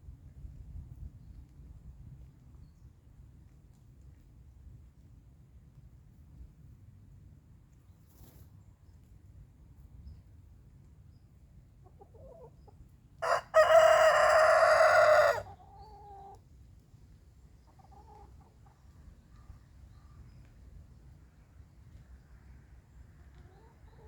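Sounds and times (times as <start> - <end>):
rooster crowing: 13.2 - 15.5.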